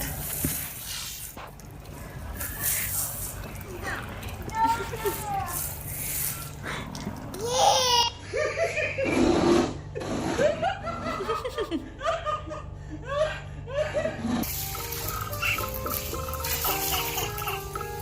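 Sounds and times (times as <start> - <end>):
high-pitched laughter: 10.4 - 12.0, 15.4 - 18.0
background music: 14.4 - 18.0.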